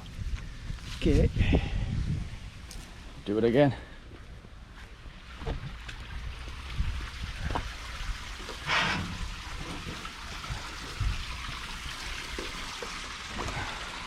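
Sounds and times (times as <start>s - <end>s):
water trickling and pouring: 4.9s - 14.0s.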